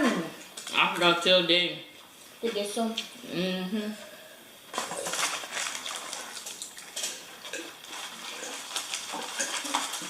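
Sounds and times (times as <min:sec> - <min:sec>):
chewing and lip smacking: 0:04.8 - 0:10.0.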